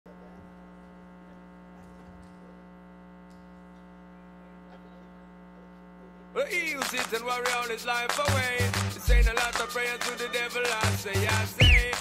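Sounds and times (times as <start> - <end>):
electrical hum: 0.1 - 9.4.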